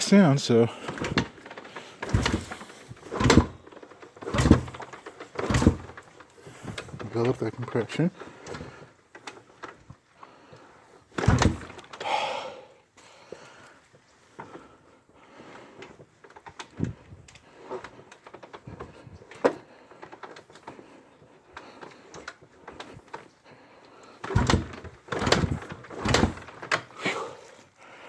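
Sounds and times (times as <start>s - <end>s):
heavy kicks on kick-start: 0.0s - 12.2s, 24.0s - 27.3s
motorcycle kick-start clicks and knocks: 0.4s - 12.1s, 15.7s - 27.7s.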